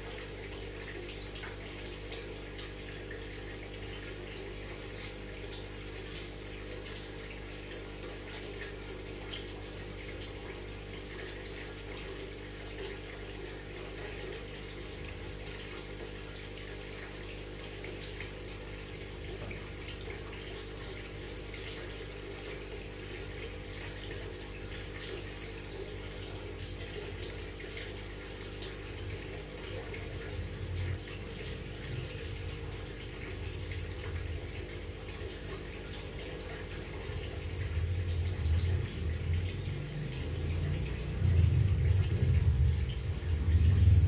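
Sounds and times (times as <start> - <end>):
aquarium filter water splashing: 0.0 - 44.0
pump motor hum: 0.0 - 44.0.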